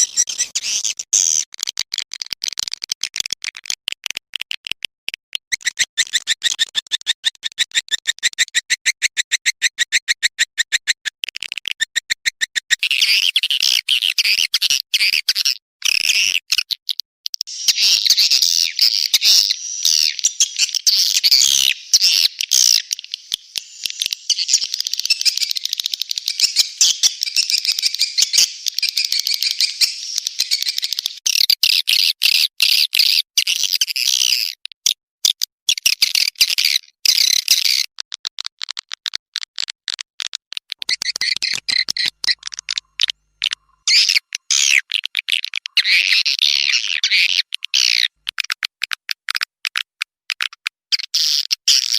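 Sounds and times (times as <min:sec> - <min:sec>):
swiftlets twittering chirps: 0:17.5 - 0:31.2, 0:40.8 - 0:44.9
dry clicks: 0:37.5 - 0:45.8.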